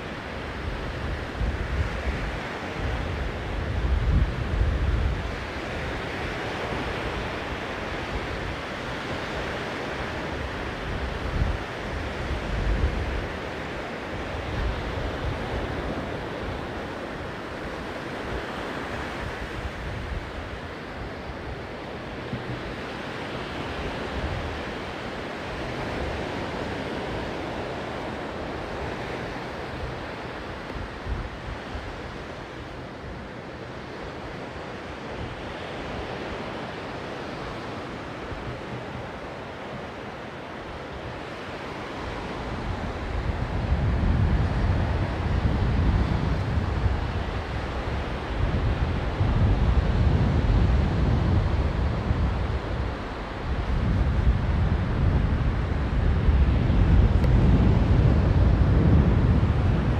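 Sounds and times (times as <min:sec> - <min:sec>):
wind buffeting microphone: 0:00.0 - 0:08.6, 0:42.0 - 0:59.9
waves washing onto beach: 0:00.0 - 0:59.9.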